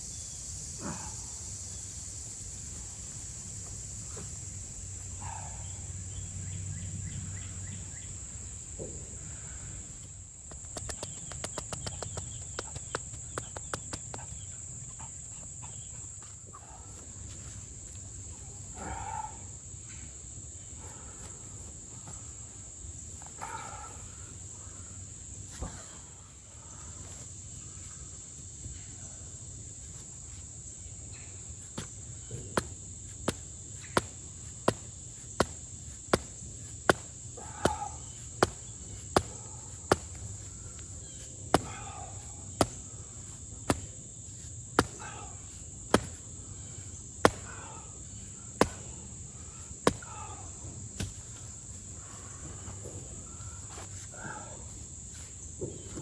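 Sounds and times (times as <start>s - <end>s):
high drone of insects: 0.0s - 56.0s.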